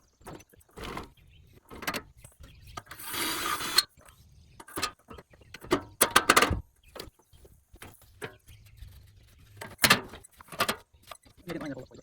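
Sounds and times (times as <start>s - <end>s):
metal chair parts clattering: 2.8s - 3.9s, 4.6s - 7.1s, 9.6s - 10.8s.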